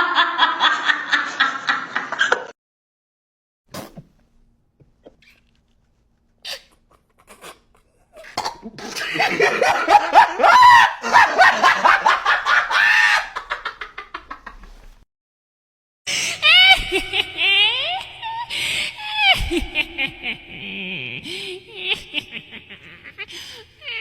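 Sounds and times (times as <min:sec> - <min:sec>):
long loud laugh: 0:00.0 - 0:02.5, 0:08.7 - 0:14.6, 0:16.4 - 0:24.0.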